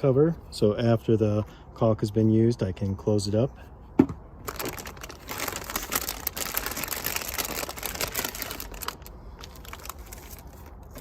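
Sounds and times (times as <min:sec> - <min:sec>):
plastic packaging crinkling: 0:04.4 - 0:11.0.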